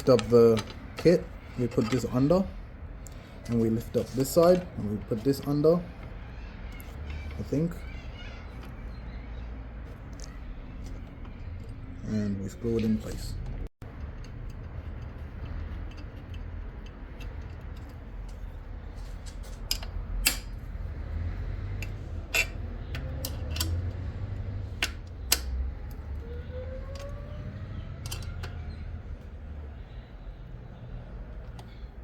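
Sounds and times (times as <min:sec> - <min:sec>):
metal clicks of screwing: 0:00.0 - 0:07.9, 0:12.8 - 0:20.7, 0:21.5 - 0:27.2, 0:27.9 - 0:28.8.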